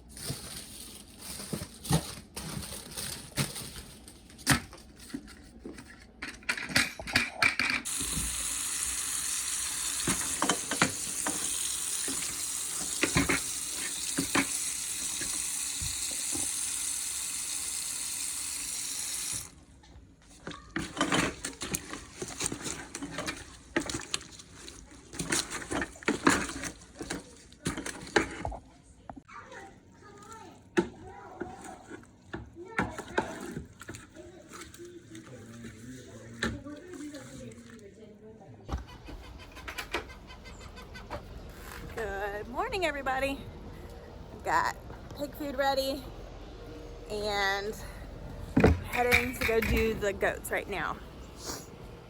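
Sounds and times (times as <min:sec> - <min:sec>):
knocks and clatter of handling: 0:00.1 - 0:07.9, 0:20.2 - 0:28.8, 0:48.5 - 0:50.2
tap water running into sink: 0:07.8 - 0:19.6.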